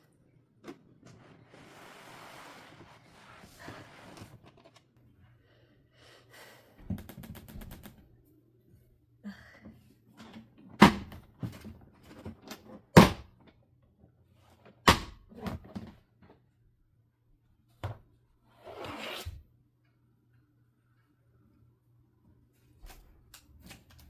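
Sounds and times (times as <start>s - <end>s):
rustling scrape: 0.7s - 5.0s.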